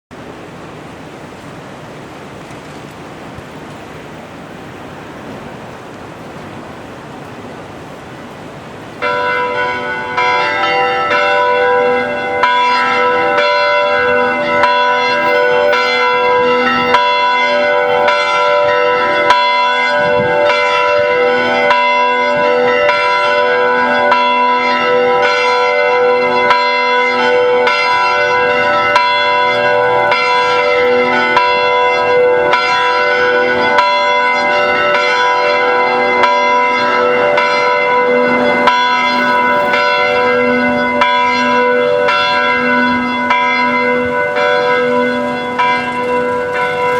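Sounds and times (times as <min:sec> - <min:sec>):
rushing background noise: 0:00.1 - 0:11.1, 0:27.3 - 0:32.6, 0:38.3 - 0:41.1
clock tower bells chiming: 0:09.0 - 0:46.9.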